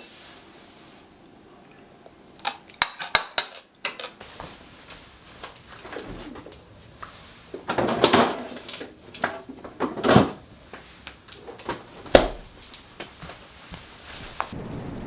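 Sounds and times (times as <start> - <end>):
dishes and utensils clattering: 2.5 - 4.3, 7.5 - 10.4.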